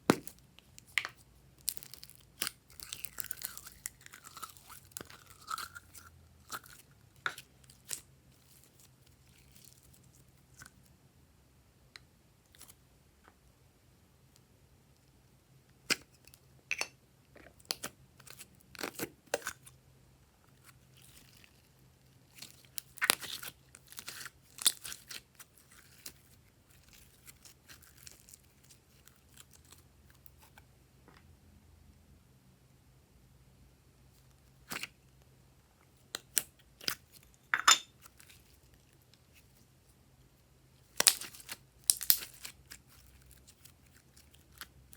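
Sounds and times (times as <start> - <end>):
slime clicking and crackling: 0.1 - 6.0, 40.9 - 44.7.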